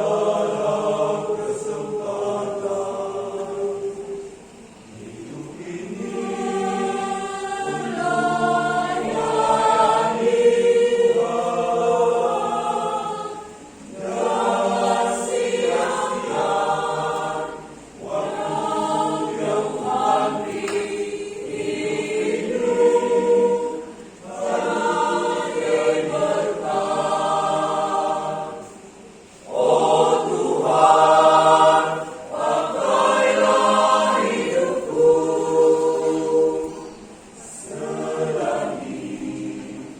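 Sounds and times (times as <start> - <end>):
choir singing a hymn: 0.0 - 39.9.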